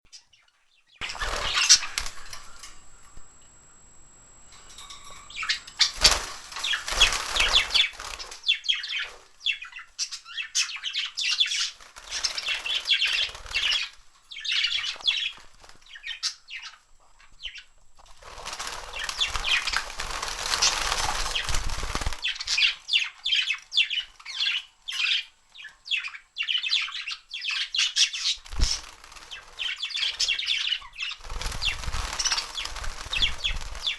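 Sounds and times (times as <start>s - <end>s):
budgerigars chirping and chattering: 0.2s - 3.0s, 4.6s - 17.7s, 18.3s - 33.9s
wings flapping: 1.0s - 9.2s, 11.4s - 14.0s, 18.0s - 22.8s, 28.4s - 33.9s.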